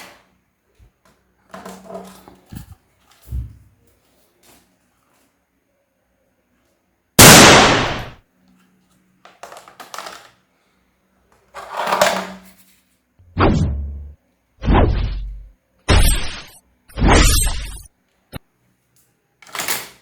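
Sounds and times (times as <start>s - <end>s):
sudden bangs: 7.2s - 8.2s, 13.3s - 17.9s.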